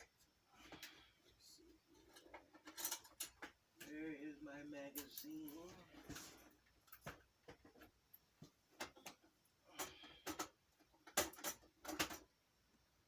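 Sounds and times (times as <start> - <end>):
hard objects clicking and knocking: 8.7 - 12.3.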